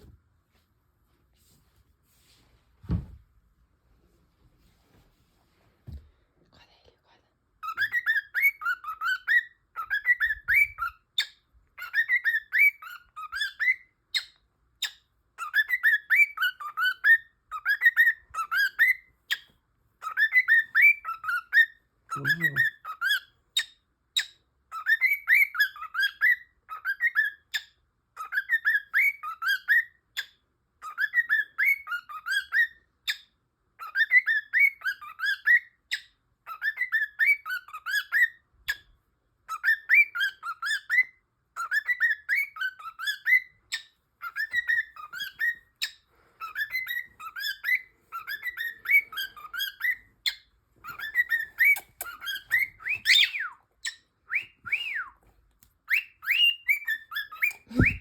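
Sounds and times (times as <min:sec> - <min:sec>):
cockatiel whistling: 0:07.6 - 0:27.6, 0:28.2 - 0:30.0, 0:30.8 - 0:38.8, 0:39.5 - 0:55.2, 0:55.8 - 0:58.0.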